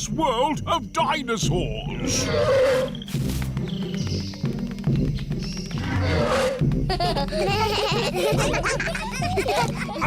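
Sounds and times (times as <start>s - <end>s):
cartoon background music: 0.0s - 10.0s
high voices laughing and giggling: 6.6s - 10.0s.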